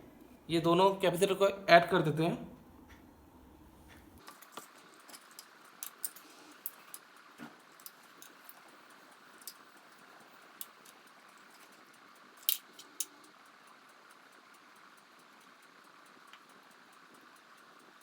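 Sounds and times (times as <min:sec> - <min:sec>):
faint steady hiss: 0:00.0 - 0:18.0
clicks of small parts handled: 0:04.4 - 0:07.0, 0:12.4 - 0:13.1.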